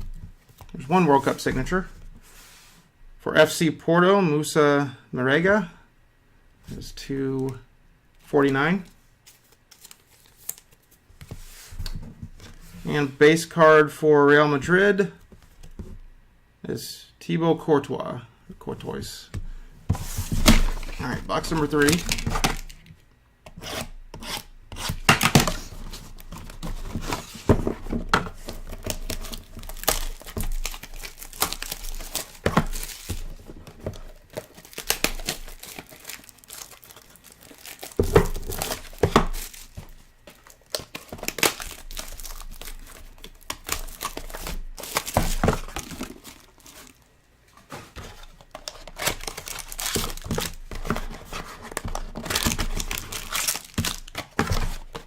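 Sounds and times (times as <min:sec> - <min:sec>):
plastic wrapping tearing: 0:28.3 - 0:47.0, 0:48.6 - 0:55.0.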